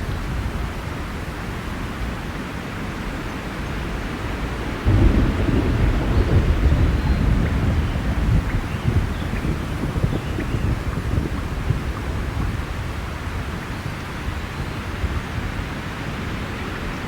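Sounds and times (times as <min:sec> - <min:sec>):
rain hiss: 0:00.0 - 0:17.0
low thunder rumble: 0:04.5 - 0:15.7.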